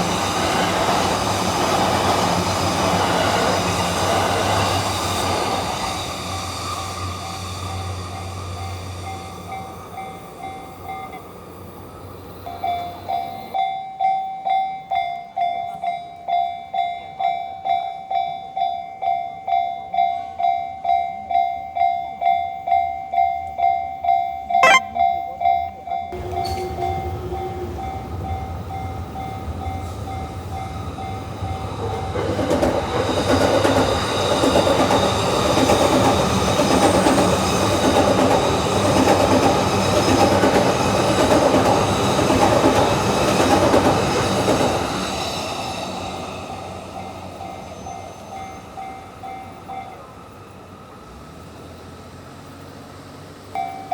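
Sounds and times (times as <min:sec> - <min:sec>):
electric train passing: 0:00.0 - 0:13.6, 0:26.2 - 0:53.9
level crossing bell ringing: 0:24.6 - 0:24.9.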